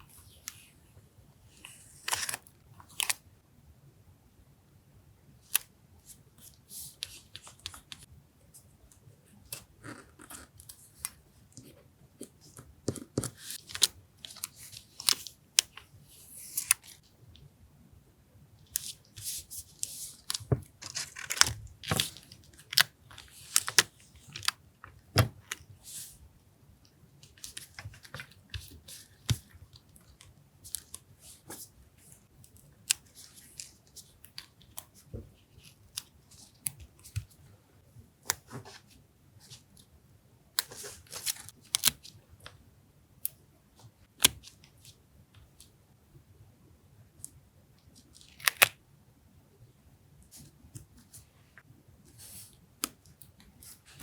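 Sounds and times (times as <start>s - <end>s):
paper rustling and crinkling: 18.8s - 26.2s.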